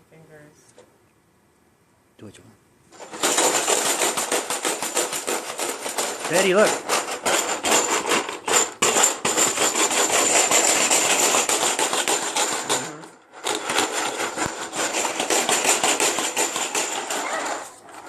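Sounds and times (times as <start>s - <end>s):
hard object rattling when shaken: 2.9s - 18.0s.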